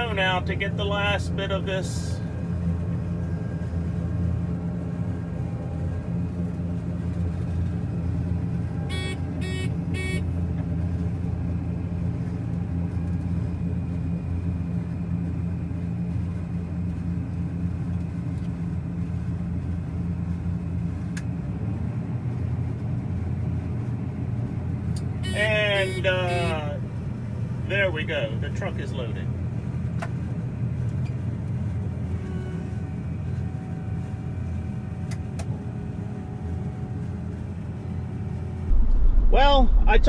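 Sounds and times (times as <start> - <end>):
combine harvester running: 0.0 - 40.0
quick electronic beeps: 8.9 - 10.2.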